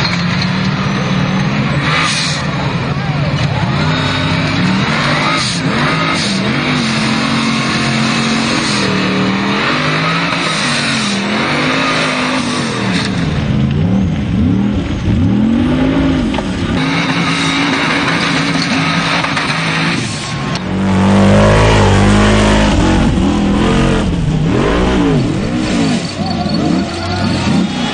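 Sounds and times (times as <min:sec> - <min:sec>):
off-road engine revving: 0:00.0 - 0:27.9
steady rushing noise: 0:20.1 - 0:26.2.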